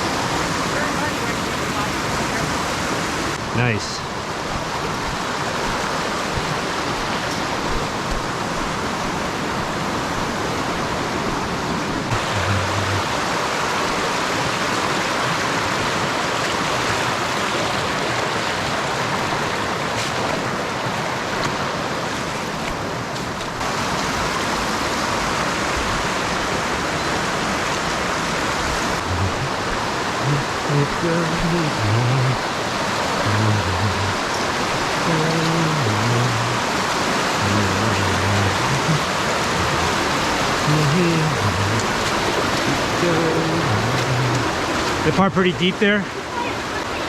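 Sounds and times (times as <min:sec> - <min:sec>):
creek water rushing: 0:00.0 - 0:47.0.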